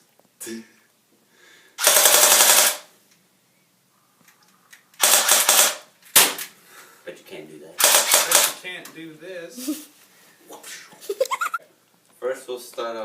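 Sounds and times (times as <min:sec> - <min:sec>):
automatic gunfire bursts: 0:01.8 - 0:02.9, 0:05.0 - 0:06.3, 0:07.8 - 0:08.6.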